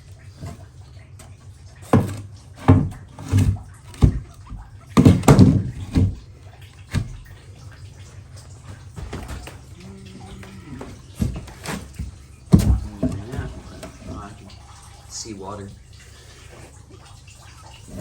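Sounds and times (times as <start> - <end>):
faint low hum: 0.0 - 18.0
hard knocks and clunks: 1.2 - 7.4, 8.7 - 14.6.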